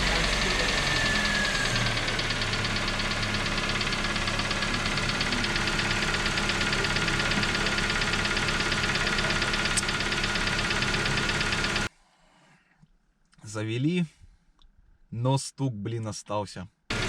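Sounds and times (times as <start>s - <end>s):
car engine running: 0.0s - 11.9s
fast regular ticking knock: 0.0s - 11.9s.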